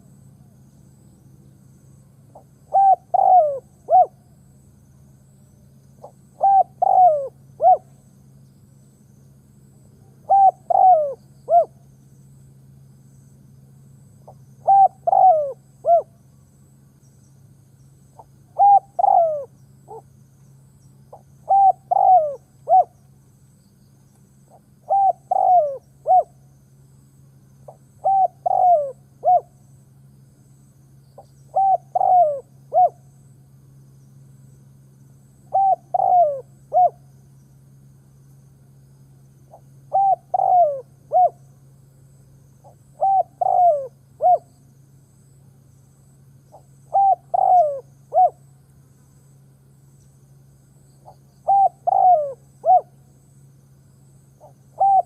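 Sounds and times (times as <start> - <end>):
dove cooing: 2.3 - 4.2, 6.0 - 7.9, 10.1 - 11.8, 14.3 - 16.2, 18.2 - 20.1, 21.1 - 23.0, 24.5 - 26.4, 27.7 - 29.5, 31.5 - 33.0, 35.5 - 37.0, 39.5 - 41.4, 42.6 - 44.5, 46.5 - 48.4, 51.0 - 53.0, 54.4 - 55.0.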